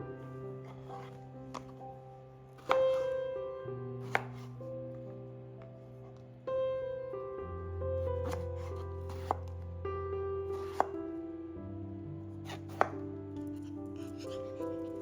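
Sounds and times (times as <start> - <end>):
soft instrumental music: 0.0 - 15.0
knife cutting on cutting board: 0.6 - 1.7, 2.6 - 3.1, 4.0 - 4.5, 8.2 - 9.5, 10.6 - 10.9, 12.5 - 15.0.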